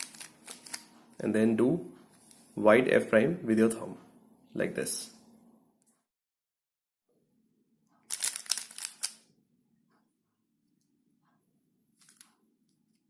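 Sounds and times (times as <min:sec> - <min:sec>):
plastic puzzle cube clicking: 0:08.1 - 0:09.2.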